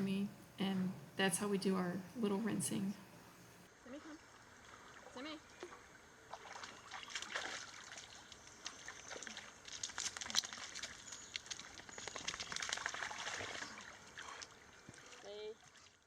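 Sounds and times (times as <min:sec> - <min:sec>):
water trickling: 0:04.4 - 0:16.0
dog splashing in water: 0:06.3 - 0:15.8.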